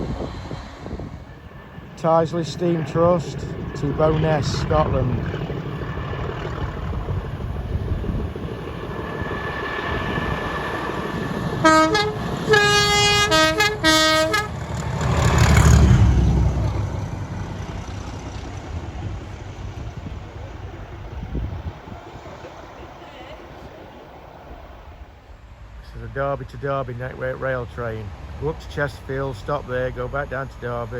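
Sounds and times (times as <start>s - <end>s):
train rumbling past: 0.0s - 30.9s
two-tone train horn: 11.6s - 14.6s.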